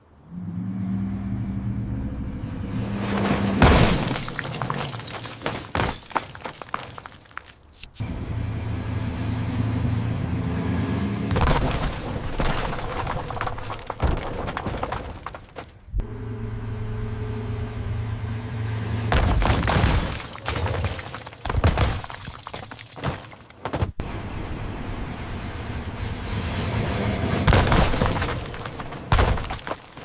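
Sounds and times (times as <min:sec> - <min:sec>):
glass shattering: 0:03.6 - 0:07.6, 0:11.4 - 0:15.6, 0:19.2 - 0:23.6, 0:27.5 - 0:30.0
debris clattering: 0:03.6 - 0:08.0, 0:11.4 - 0:15.9, 0:19.1 - 0:24.0, 0:27.5 - 0:30.0
crash of crumpling metal: 0:11.4 - 0:15.7, 0:19.1 - 0:24.0, 0:27.5 - 0:30.0
car engine humming: 0:14.9 - 0:22.9.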